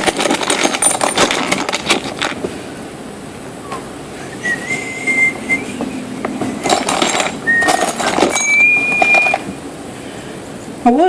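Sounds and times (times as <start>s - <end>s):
metal nuts and bolts clattering: 0.0s - 2.5s, 6.4s - 9.5s
person whistling: 3.7s - 5.8s, 7.4s - 9.5s.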